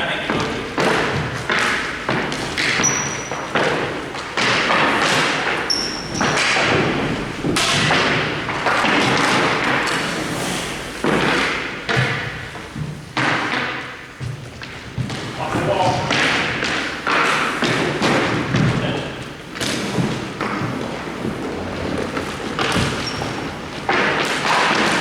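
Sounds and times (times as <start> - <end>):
hockey sticks and puck thudding: 0.1 - 25.0
high squeaks: 2.8 - 3.4, 5.7 - 6.4.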